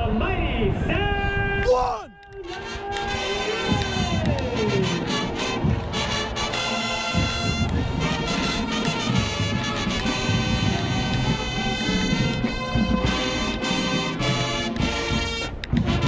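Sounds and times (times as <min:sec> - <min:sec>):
brass chords: 0:02.4 - 0:16.0
drum strokes: 0:02.5 - 0:16.0.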